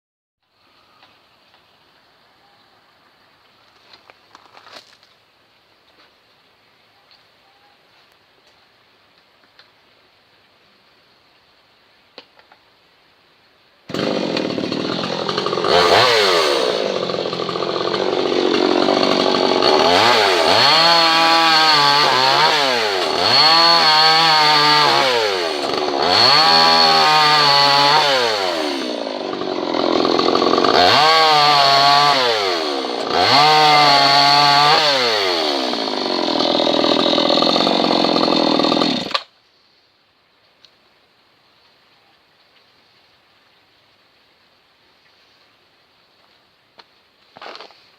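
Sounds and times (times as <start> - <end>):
chainsaw cutting wood: 13.9 - 39.3, 47.4 - 47.8.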